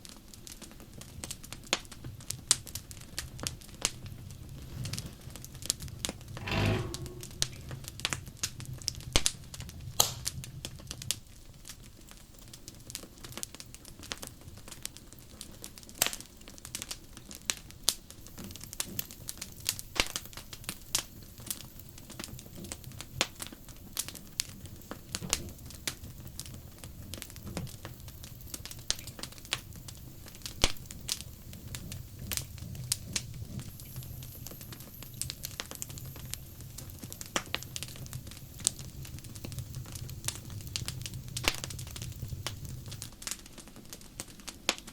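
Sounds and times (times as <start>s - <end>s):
wood fire crackling and popping: 0.0s - 44.9s
low rumble of flames: 2.2s - 12.2s, 24.0s - 44.6s.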